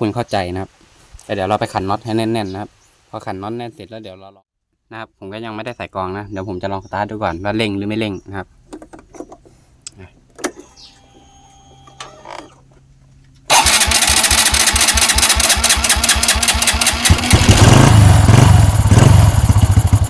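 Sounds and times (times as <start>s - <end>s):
motorcycle engine starting and revving: 13.5s - 20.0s.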